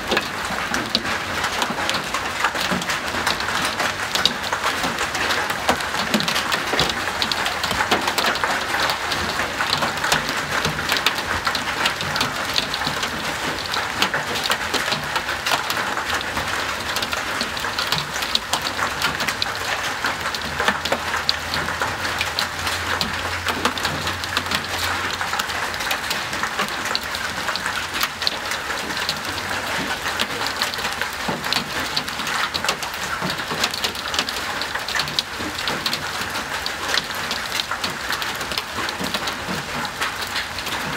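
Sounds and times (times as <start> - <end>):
hailstones clattering: 0.0 - 40.9.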